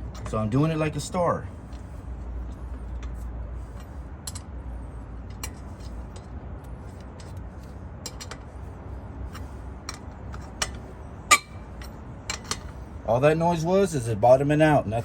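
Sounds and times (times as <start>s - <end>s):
lug wrench tightening nuts: 5.2s - 8.5s, 9.2s - 12.8s.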